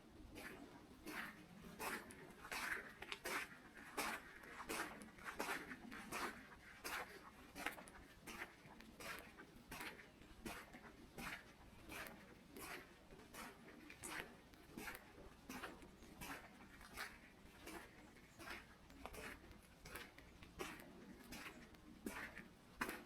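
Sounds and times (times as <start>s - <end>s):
footsteps on forest path: 0.4s - 23.0s.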